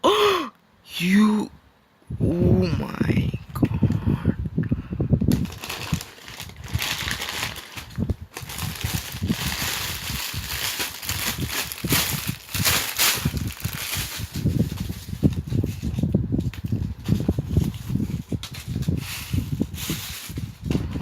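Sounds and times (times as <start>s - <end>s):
packaging being torn open: 5.3s - 14.4s.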